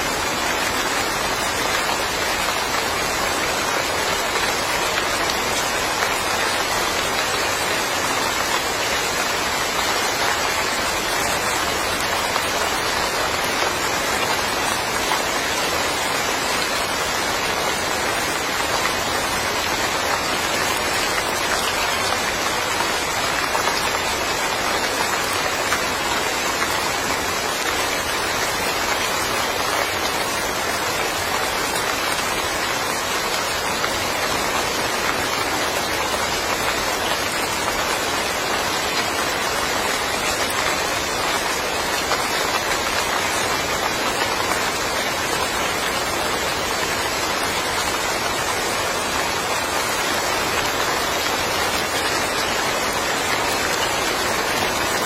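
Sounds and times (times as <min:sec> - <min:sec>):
steady rainfall: 0:00.0 - 0:55.0.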